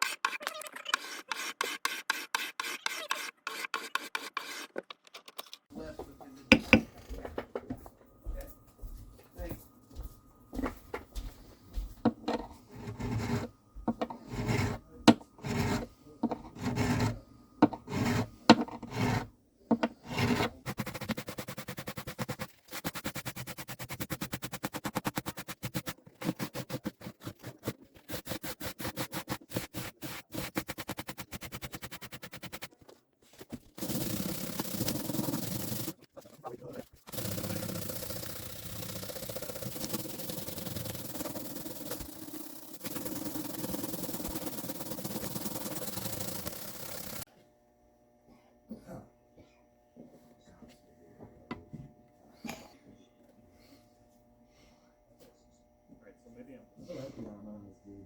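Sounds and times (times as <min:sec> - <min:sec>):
file rasping on guitar part: 0:12.7 - 0:13.5, 0:14.1 - 0:14.8, 0:15.4 - 0:32.7, 0:37.1 - 0:47.2.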